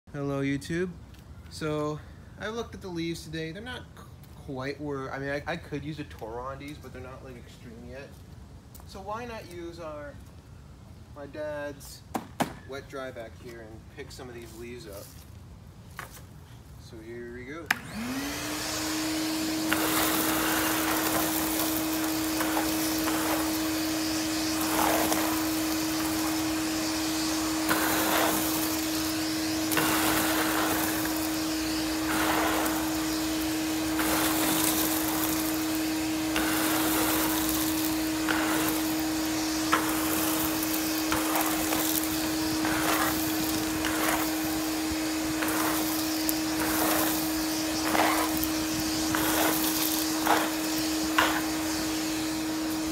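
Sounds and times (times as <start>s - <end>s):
leaves sucked up hose: 16.2s - 52.9s
shop vac motor whine: 17.7s - 52.9s.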